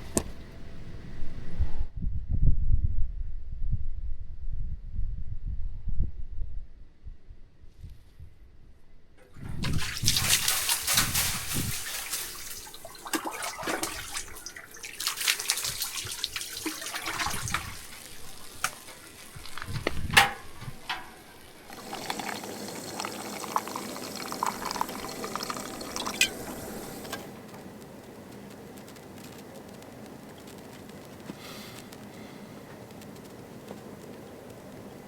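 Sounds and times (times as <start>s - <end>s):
water pouring and splashing: 9.2s - 27.3s.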